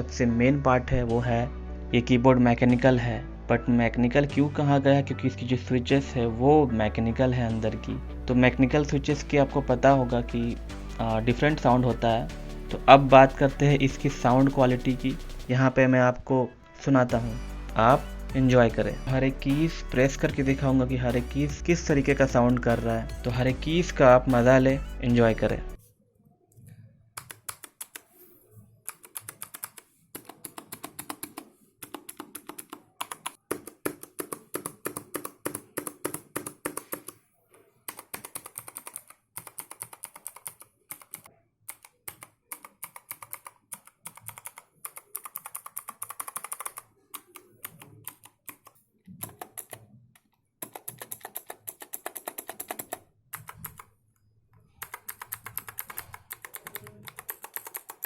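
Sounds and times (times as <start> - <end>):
mechanical keyboard clicking: 27.2 - 28.1, 28.9 - 37.2, 37.9 - 49.9, 50.6 - 53.9, 54.8 - 58.0.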